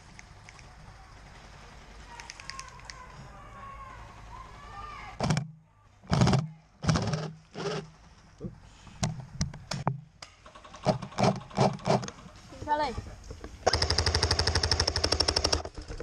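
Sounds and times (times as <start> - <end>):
steady background hum: 0.0 - 16.0
airsoft guns firing: 6.1 - 7.4, 10.3 - 12.2, 13.7 - 15.6.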